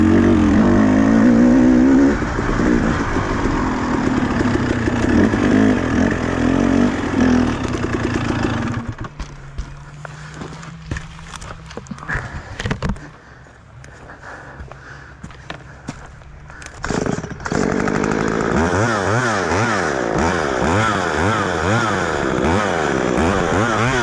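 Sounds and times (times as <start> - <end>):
low steady hum: 0.0 - 8.2
two-stroke engine revving: 0.0 - 9.3, 16.5 - 24.0.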